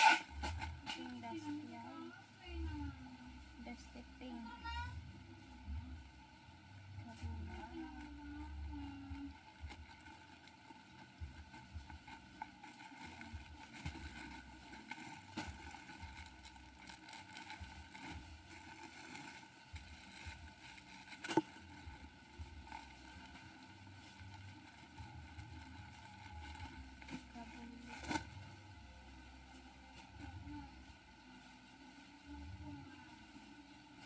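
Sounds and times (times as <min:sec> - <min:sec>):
low background rumble: 0:00.0 - 0:34.0.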